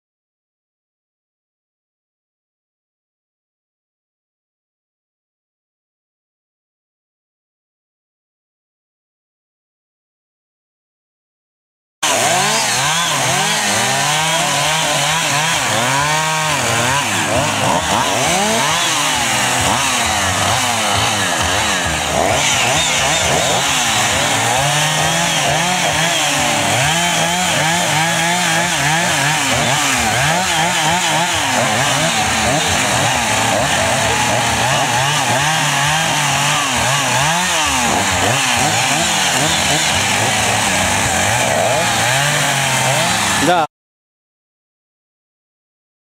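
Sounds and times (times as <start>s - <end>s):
chainsaw revving: 12.0s - 43.7s.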